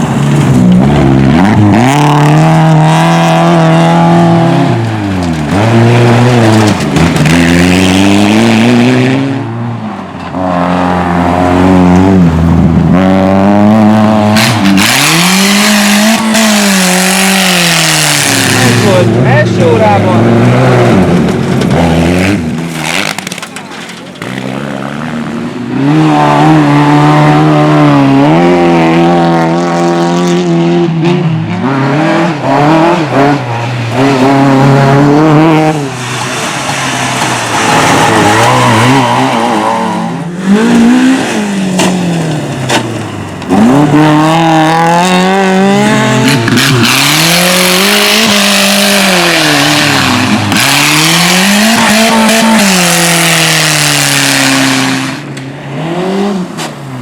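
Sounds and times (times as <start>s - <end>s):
race car engine revving: 0.0s - 57.0s
tyre squeal: 36.3s - 40.9s.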